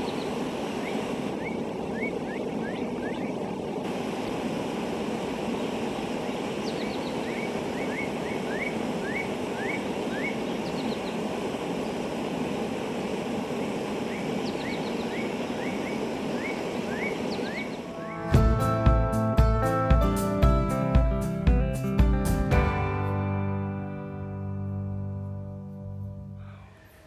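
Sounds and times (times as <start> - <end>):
steady rushing noise: 0.0 - 18.9
bird chirping: 6.6 - 11.2, 14.1 - 18.3.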